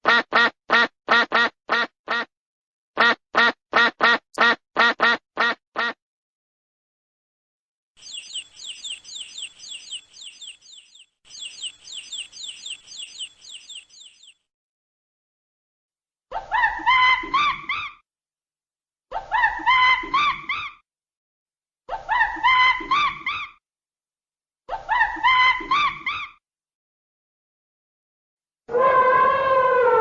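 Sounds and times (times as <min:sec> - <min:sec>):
duck quacking: 0:03.0 - 0:06.0
high-pitched chirping: 0:08.0 - 0:14.4.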